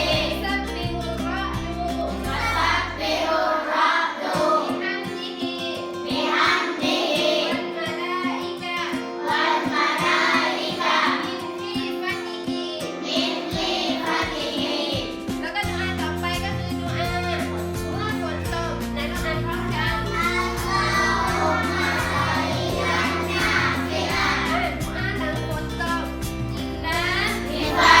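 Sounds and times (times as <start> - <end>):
children singing: 0.0 - 0.7, 2.0 - 15.3, 20.1 - 24.8, 26.9 - 28.0
backing music with deep bass: 0.0 - 4.0, 15.0 - 28.0.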